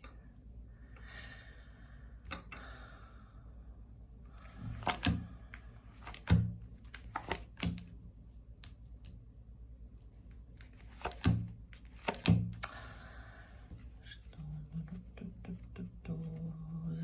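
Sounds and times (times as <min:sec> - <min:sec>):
cards tapping on a table: 0:04.6 - 0:05.3, 0:06.0 - 0:07.9, 0:10.9 - 0:12.7.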